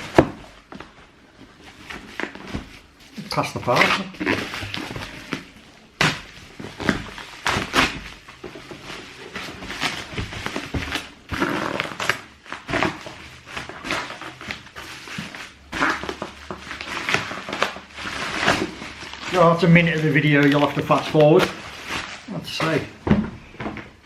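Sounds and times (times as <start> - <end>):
wrapping rustling and tearing: 0.0 - 23.0
box knocks and thumps: 22.6 - 24.0.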